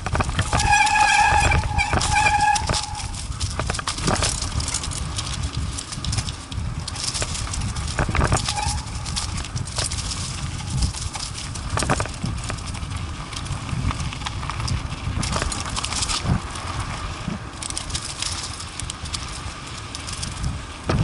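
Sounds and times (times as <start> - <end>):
atv knocks and rattles: 0.0 - 12.8, 13.9 - 16.5, 20.2 - 21.0
atv engine low rumble: 0.0 - 21.0.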